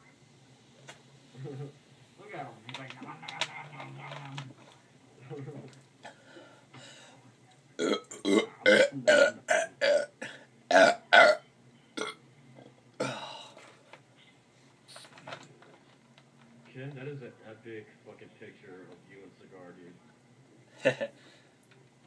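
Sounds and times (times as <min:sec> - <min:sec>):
loud burps: 0:07.8 - 0:11.4, 0:12.0 - 0:12.2.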